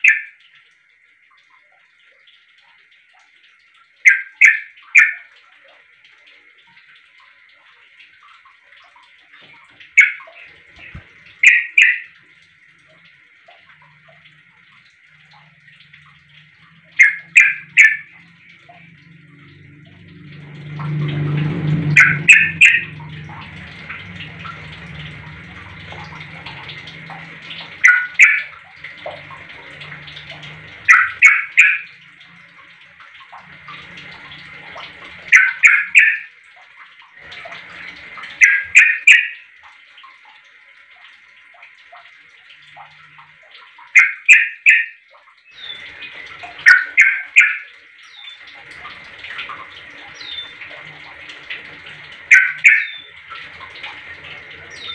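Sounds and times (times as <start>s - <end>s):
bulbul bubbly calls: 0.0s - 0.4s, 4.0s - 5.3s, 9.9s - 12.2s, 15.2s - 20.2s, 21.8s - 29.5s, 30.1s - 32.1s, 35.3s - 36.3s, 38.3s - 39.5s, 43.9s - 48.9s, 50.0s - 50.7s, 52.2s - 53.3s, 54.6s - 54.9s.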